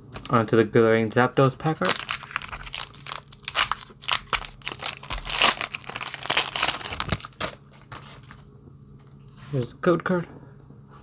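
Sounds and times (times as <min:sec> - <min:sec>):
foil wrapper tearing and crinkling: 0:00.2 - 0:00.4, 0:01.1 - 0:08.4.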